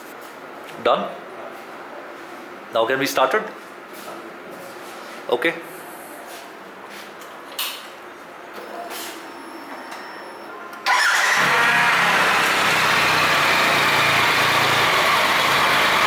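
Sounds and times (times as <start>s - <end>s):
motorcycle engine starting and idling: 10.9s - 16.0s.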